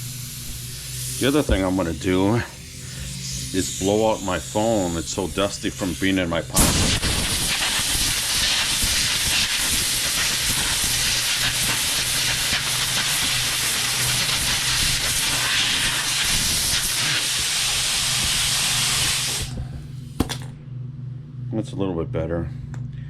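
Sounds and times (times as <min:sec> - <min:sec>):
compressed air hissing from nozzle: 0:00.0 - 0:20.2
low hum: 0:18.1 - 0:23.0.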